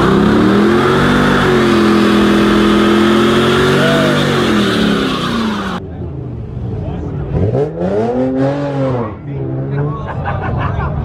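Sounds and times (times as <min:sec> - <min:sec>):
car engine revving hard: 0:00.0 - 0:05.8, 0:07.3 - 0:09.8.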